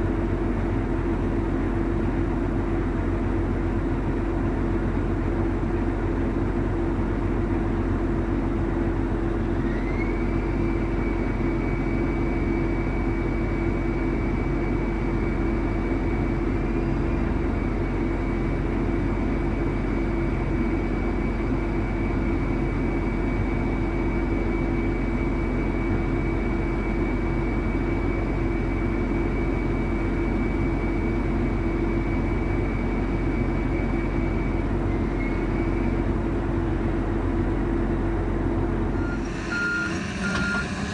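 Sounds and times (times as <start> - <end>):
heavy diesel machinery running: 0.0 - 40.9
thin high whine: 39.0 - 40.9.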